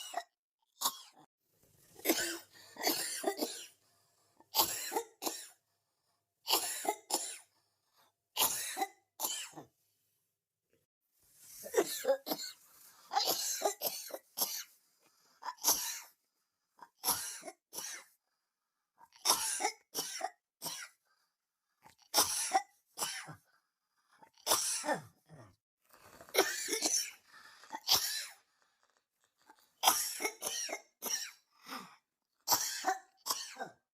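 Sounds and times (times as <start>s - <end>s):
person coughing: 0.0s - 1.3s, 2.0s - 3.8s, 11.6s - 14.7s, 26.3s - 28.4s, 32.5s - 33.8s.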